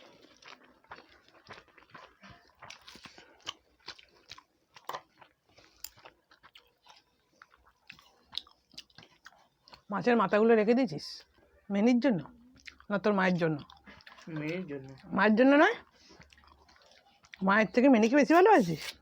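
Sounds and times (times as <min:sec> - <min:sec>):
chewing and biting food: 0:00.0 - 0:09.9, 0:11.2 - 0:17.5.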